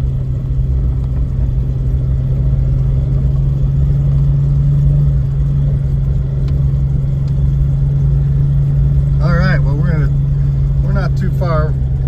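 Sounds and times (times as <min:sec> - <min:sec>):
engine droning under load: 0:00.0 - 0:12.0.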